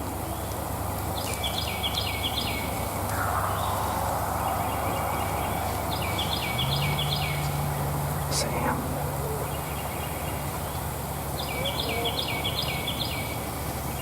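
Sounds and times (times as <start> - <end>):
low background hum: 0.0 - 14.0
short high birdsong: 2.1 - 8.8.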